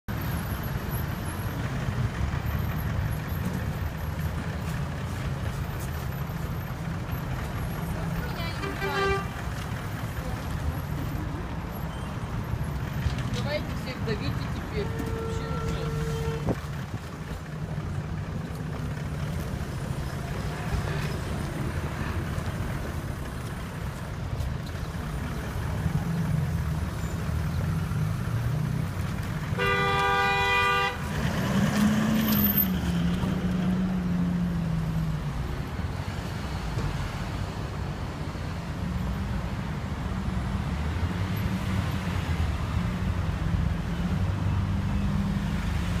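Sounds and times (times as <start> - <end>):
car engine and road noise: 0.0 - 46.0
car horn honking: 8.4 - 9.4, 14.7 - 16.6, 29.5 - 31.1
engine revving: 31.0 - 34.1.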